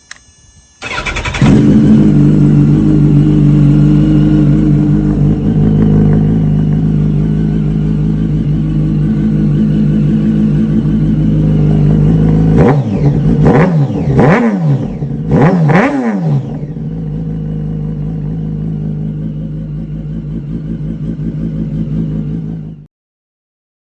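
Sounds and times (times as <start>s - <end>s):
motorcycle engine idling and revving: 0.8s - 22.9s.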